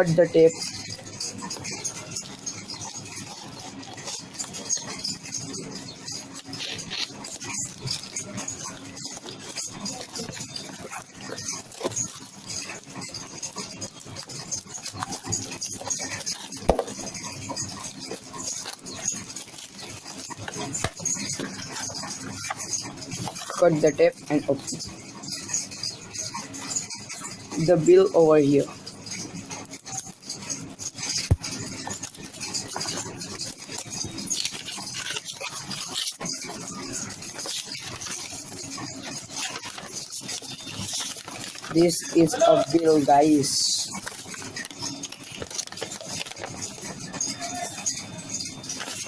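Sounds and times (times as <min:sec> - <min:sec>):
cardboard parcel rustling: 0:06.3 - 0:13.0, 0:13.6 - 0:24.7, 0:31.2 - 0:49.0.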